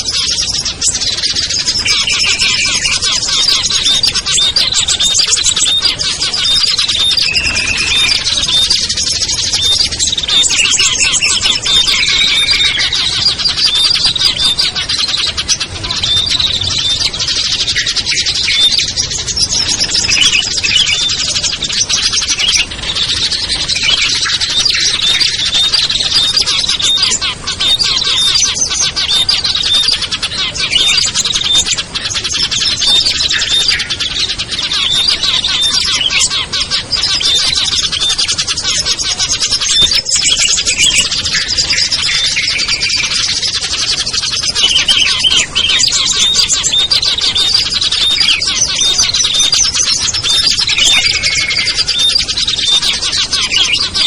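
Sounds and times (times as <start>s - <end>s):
low whistled bird notes: 0.0s - 54.0s
songbirds chirping and trilling: 0.0s - 54.0s.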